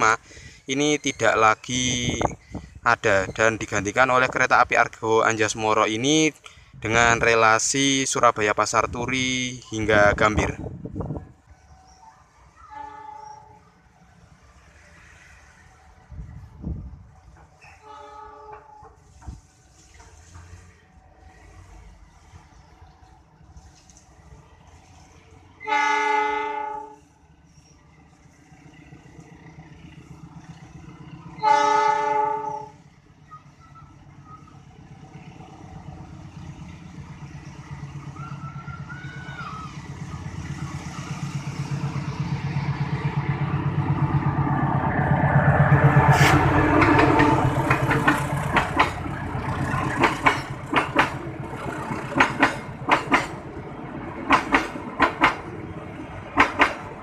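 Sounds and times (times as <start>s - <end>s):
locomotive engine passing: 7.1s - 57.0s
train horn blasts: 12.6s - 13.7s, 17.7s - 19.0s, 25.6s - 27.1s, 31.4s - 32.9s, 46.1s - 47.6s
train wheels clicking over rail joints: 39.7s - 57.0s.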